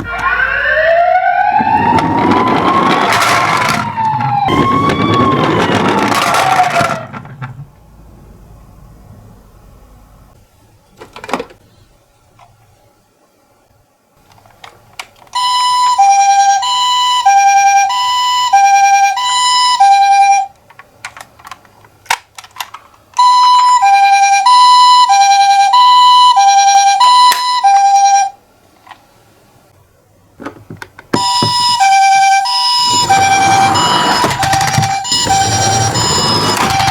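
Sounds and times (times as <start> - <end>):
toy two-tone siren: 0.0 - 7.0, 15.3 - 20.5, 23.2 - 28.4, 31.2 - 36.9.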